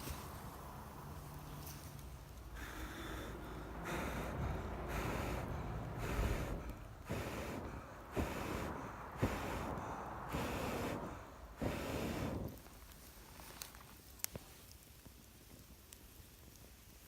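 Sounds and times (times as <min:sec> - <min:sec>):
person blowing breathy puffs: 0:02.5 - 0:12.8.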